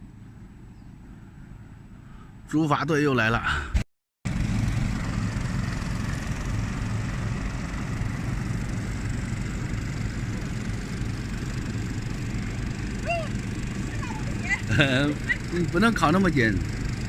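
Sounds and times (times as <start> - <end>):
outboard engines humming: 4.3 - 17.0.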